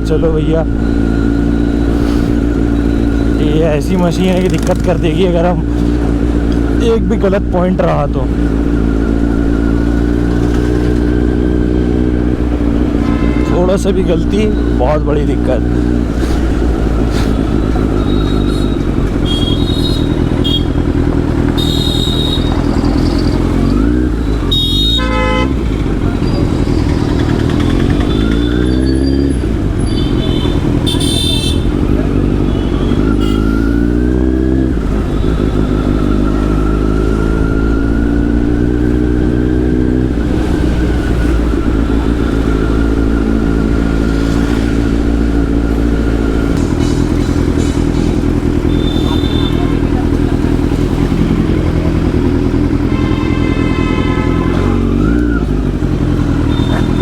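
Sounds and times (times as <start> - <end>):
motorcycle engine: 0.0 - 57.0
vehicle horn toots: 12.8 - 13.9, 18.0 - 20.9, 21.5 - 23.2, 24.4 - 26.4, 29.8 - 31.8, 32.4 - 34.0, 48.6 - 50.0, 52.8 - 55.2.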